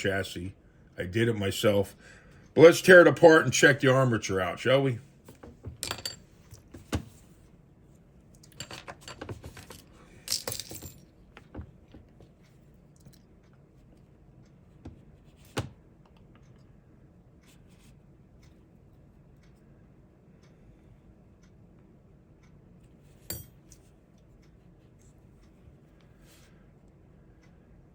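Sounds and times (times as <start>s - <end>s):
small plastic and metal parts rattling: 8.4s - 11.0s.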